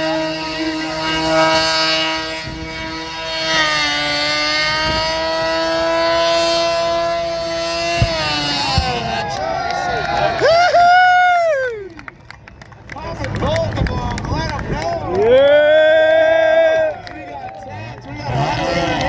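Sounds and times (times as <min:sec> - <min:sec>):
race car engine at high revs: 0:00.0 - 0:10.8, 0:13.3 - 0:19.0
engine sharp pops: 0:07.5 - 0:09.4.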